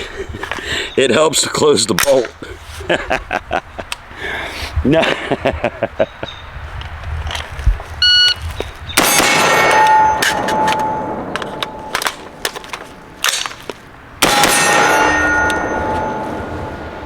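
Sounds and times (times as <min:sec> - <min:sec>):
steel targets ringing: 0:09.0 - 0:13.6, 0:14.2 - 0:17.0
rifle shots: 0:09.0 - 0:16.8
magazine change clicks and clatter: 0:11.4 - 0:13.8.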